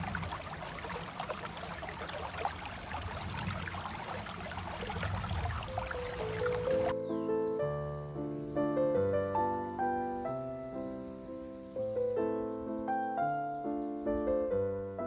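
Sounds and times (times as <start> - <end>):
low steady rumble: 0.0 - 6.9
piano notes: 5.2 - 15.0.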